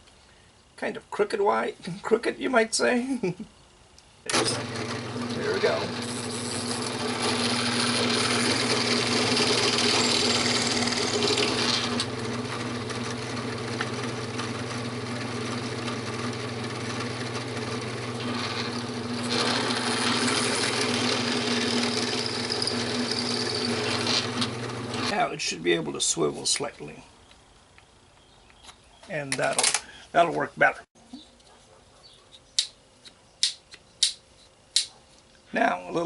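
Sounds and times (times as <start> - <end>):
drill bit boring through plywood: 4.3 - 25.1
drill press motor running: 4.3 - 25.1.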